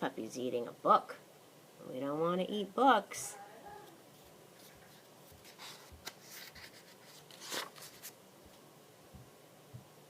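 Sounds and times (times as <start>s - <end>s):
page turning swish: 4.2s - 8.2s
paper rustling and clicks: 5.4s - 8.2s.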